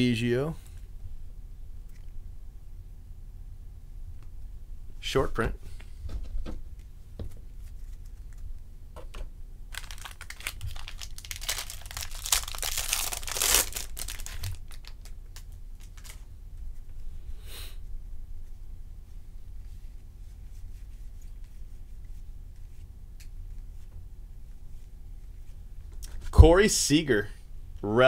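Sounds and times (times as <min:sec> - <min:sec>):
card pack wrapper tearing: 0:09.7 - 0:16.2.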